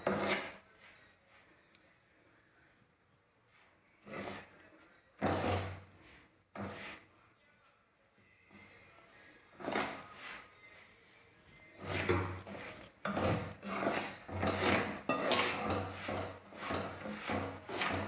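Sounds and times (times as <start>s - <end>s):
spoon scraping salt in metal pot: 0.0s - 1.1s, 3.5s - 7.1s, 9.1s - 10.8s, 11.7s - 18.0s.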